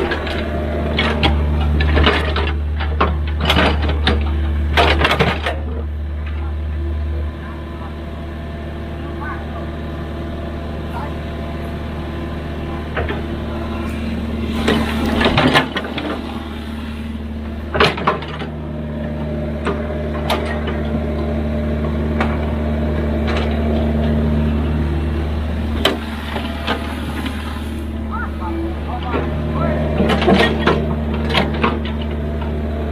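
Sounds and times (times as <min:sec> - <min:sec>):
diesel engine running: 0:00.0 - 0:32.9
metallic clanks and knocks: 0:17.7 - 0:21.3, 0:28.9 - 0:32.2.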